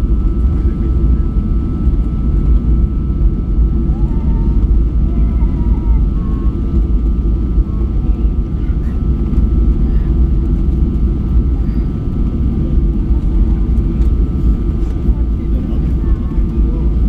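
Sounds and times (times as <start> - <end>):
jet engine rumble: 0.0 - 17.0.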